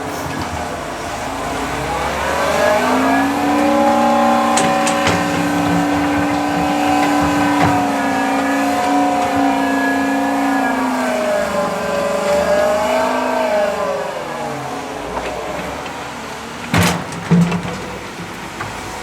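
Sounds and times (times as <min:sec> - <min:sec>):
diesel engine under load: 0:00.0 - 0:19.0.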